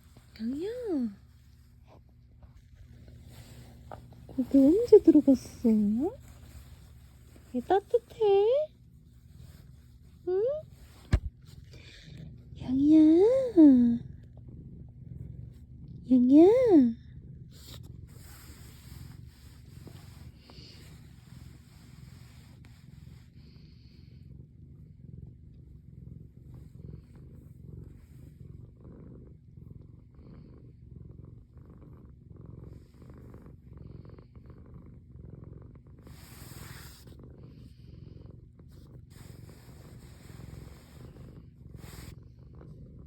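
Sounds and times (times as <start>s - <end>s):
rustling: 0.0s - 12.5s
cat purring: 0.0s - 43.0s.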